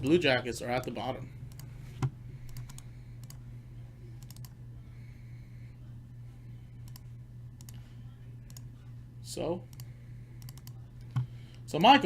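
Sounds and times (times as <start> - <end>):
steady low hum: 0.0 - 12.0
light computer clicks: 2.4 - 3.4, 4.2 - 4.6, 6.8 - 7.8, 9.7 - 11.9.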